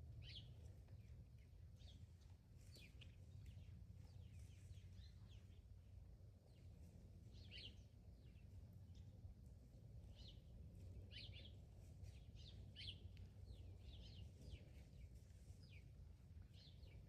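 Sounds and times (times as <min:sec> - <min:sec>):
low steady rumble: 0:00.0 - 0:17.0
bird chirps: 0:07.4 - 0:08.4, 0:11.1 - 0:11.6, 0:12.2 - 0:15.9.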